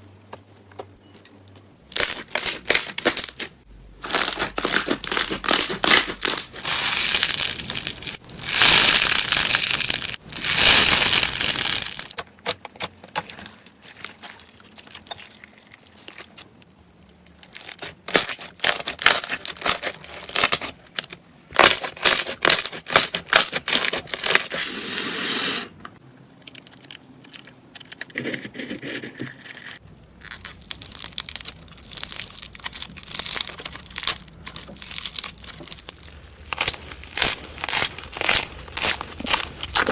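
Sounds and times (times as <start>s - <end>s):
slime crackling and popping: 2.0s - 12.6s, 30.2s - 39.9s.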